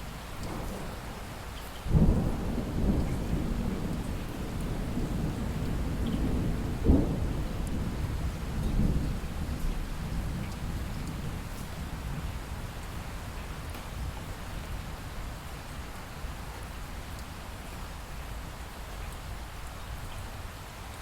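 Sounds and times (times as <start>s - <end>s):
steady rain: 0.0s - 21.0s
thunder rumbling: 0.4s - 12.6s.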